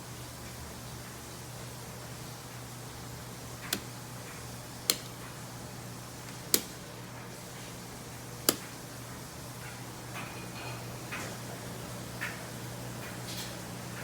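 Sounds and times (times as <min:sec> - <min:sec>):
steady low hum: 0:00.8 - 0:14.0
light switch clicking: 0:03.6 - 0:03.9, 0:04.8 - 0:05.2, 0:06.3 - 0:06.8, 0:08.4 - 0:08.8.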